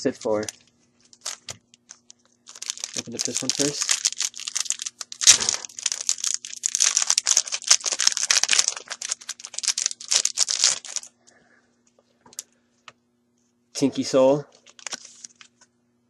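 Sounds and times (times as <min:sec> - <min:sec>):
foil pack tearing and crinkling: 0:01.1 - 0:11.1, 0:14.6 - 0:15.5.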